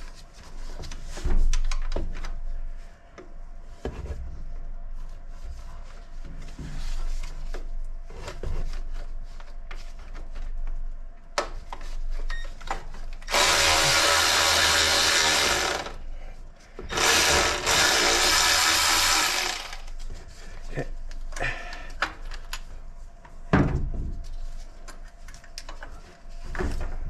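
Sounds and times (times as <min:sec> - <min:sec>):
power tool running: 0:13.3 - 0:16.0, 0:16.9 - 0:19.9.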